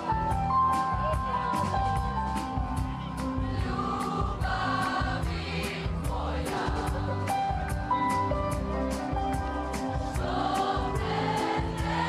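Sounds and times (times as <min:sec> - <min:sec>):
live rock band playing: 0:00.0 - 0:04.8, 0:06.5 - 0:12.0
drum beat with cymbal hits: 0:00.0 - 0:12.0
voices singing: 0:03.4 - 0:07.3, 0:10.2 - 0:12.0.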